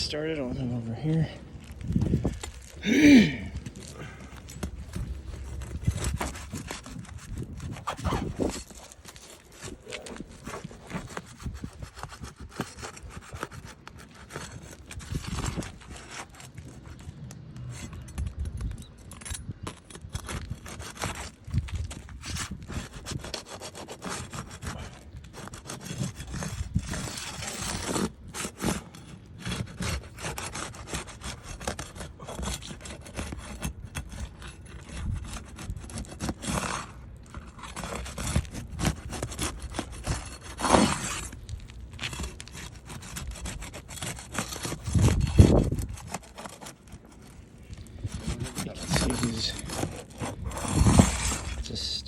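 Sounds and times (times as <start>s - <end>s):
roof shingles scraping: 0.1s - 18.1s, 19.0s - 52.0s.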